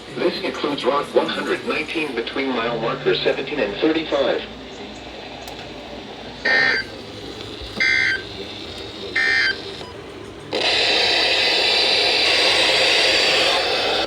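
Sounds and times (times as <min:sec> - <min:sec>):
radio static hiss: 0:00.0 - 0:14.0
warbling digital data tones: 0:06.4 - 0:07.0.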